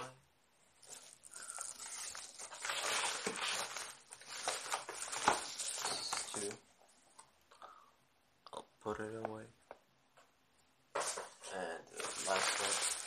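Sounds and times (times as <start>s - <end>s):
packaging rustling and scraping: 0.8s - 6.6s, 11.0s - 13.0s.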